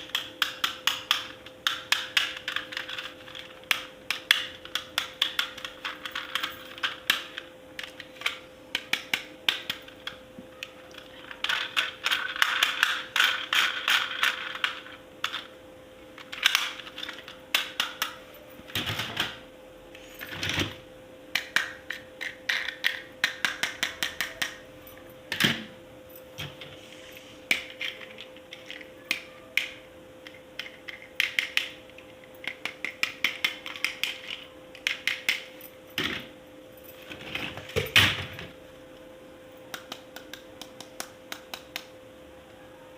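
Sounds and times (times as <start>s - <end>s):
plastic toy parts clicking: 0.0s - 15.5s, 16.2s - 18.2s, 21.4s - 24.6s, 27.5s - 31.8s, 32.4s - 35.4s
faint steady hum: 0.0s - 42.9s.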